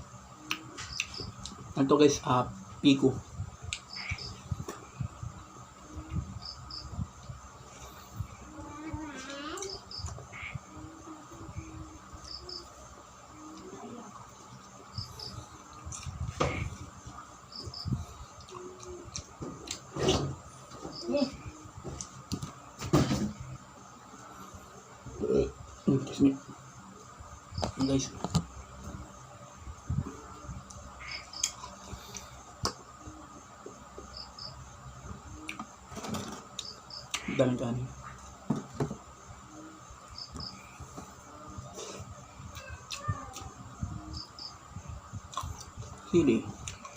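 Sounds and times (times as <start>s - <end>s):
cricket chirping: 0.0s - 46.9s
mouth and eating noises: 45.2s - 46.9s.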